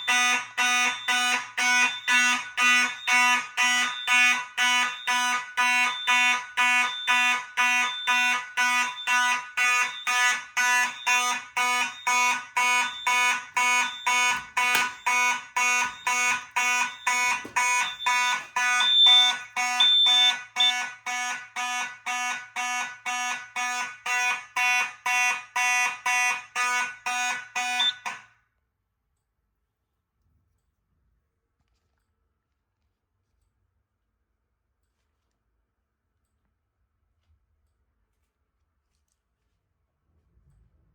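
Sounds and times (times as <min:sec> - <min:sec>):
fire alarm horns buzzing: 0:00.0 - 0:28.3.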